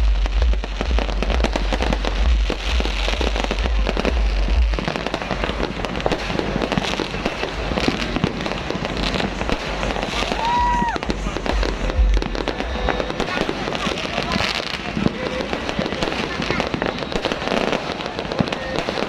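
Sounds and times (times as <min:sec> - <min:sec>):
deep rumble: 0:00.0 - 0:06.0, 0:08.8 - 0:13.3
fireworks bangs and crackles: 0:00.0 - 0:19.0.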